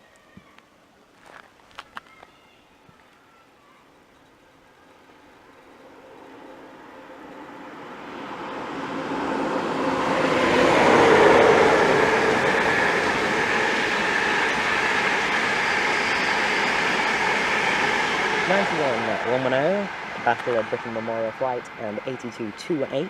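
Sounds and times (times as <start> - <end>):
train wheels rumbling on rail: 5.6 - 23.0.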